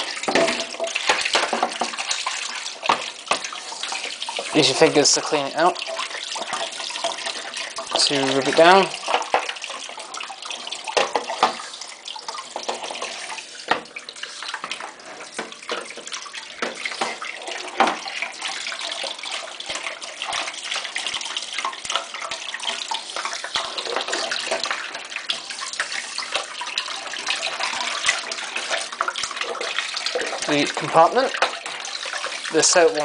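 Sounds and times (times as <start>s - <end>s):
water running from a tap: 0.0s - 33.0s
plastic knocking against sink: 0.3s - 2.0s, 15.4s - 18.0s.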